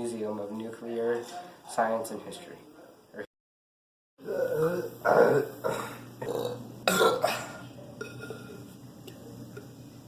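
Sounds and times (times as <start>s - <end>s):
person burping: 4.2s - 7.6s.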